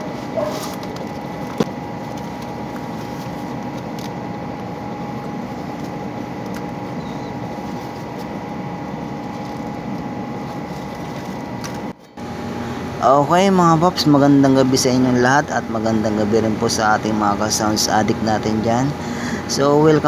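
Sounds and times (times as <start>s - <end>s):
steady hum and hiss: 0.0s - 20.0s.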